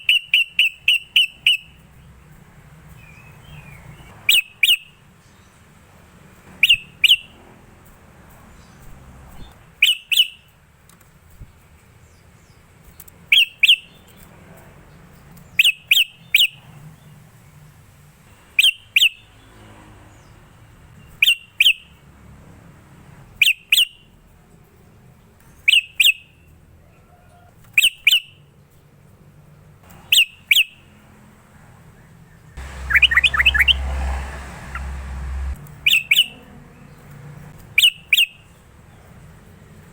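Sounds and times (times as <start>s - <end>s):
bulbul calling: 0.0s - 1.8s, 2.9s - 5.5s, 6.6s - 7.4s, 8.6s - 10.5s, 13.3s - 14.2s, 15.5s - 16.7s, 18.5s - 19.3s, 21.0s - 22.0s, 23.4s - 24.0s, 25.6s - 26.4s, 27.0s - 28.4s, 29.9s - 31.0s, 32.4s - 39.0s.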